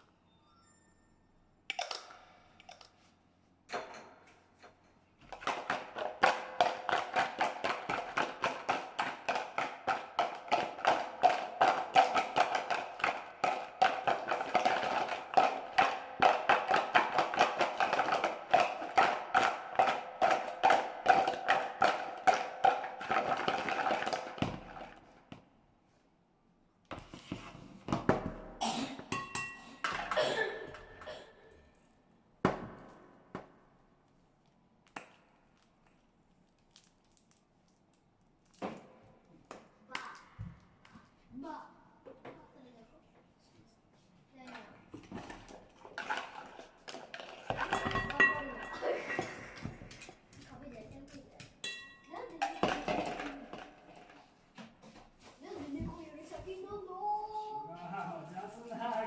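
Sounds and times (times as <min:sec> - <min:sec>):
knocks and clinks: 0:29.1 - 0:30.2, 0:47.1 - 0:50.2, 0:51.4 - 0:54.2.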